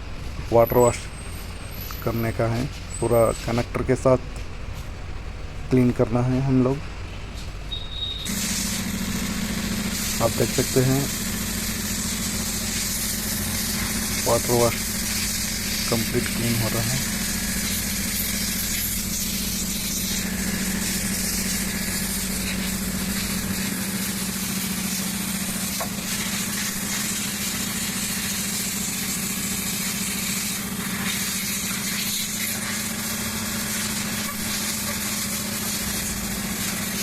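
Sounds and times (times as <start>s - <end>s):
steady machine hum: 0.0s - 37.0s
water spray hissing: 8.0s - 37.0s.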